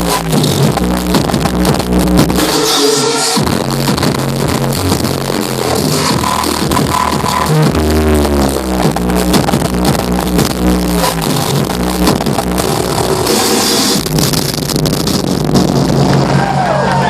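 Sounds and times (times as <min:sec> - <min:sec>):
electronic dance music: 0:00.0 - 0:17.0
crowd cheering and whistling: 0:16.0 - 0:17.0.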